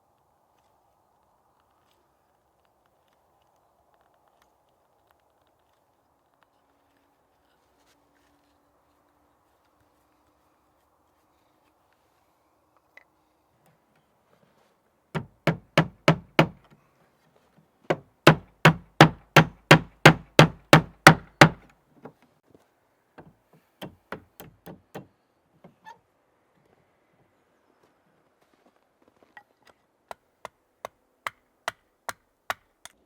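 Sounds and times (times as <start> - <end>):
hand tool knocking on wood: 15.2 - 16.6, 17.9 - 21.7, 23.2 - 25.1.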